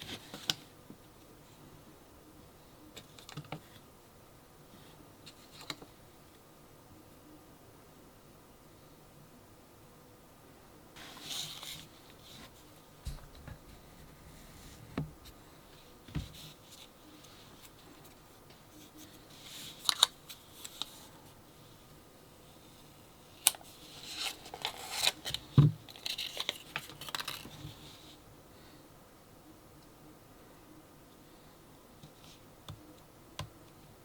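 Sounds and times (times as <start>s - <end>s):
packaging rustling and scraping: 23.4s - 28.1s.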